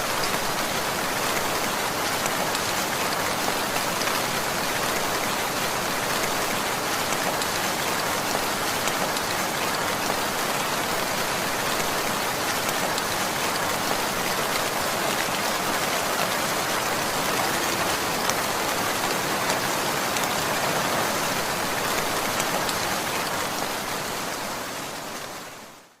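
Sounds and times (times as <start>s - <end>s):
heavy rain falling: 0.0s - 25.9s.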